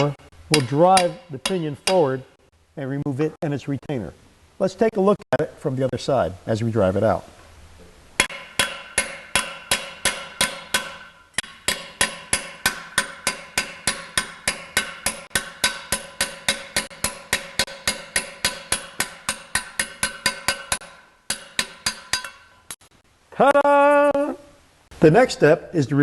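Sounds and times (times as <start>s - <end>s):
hammer tapping on metal socket: 0.0s - 2.2s.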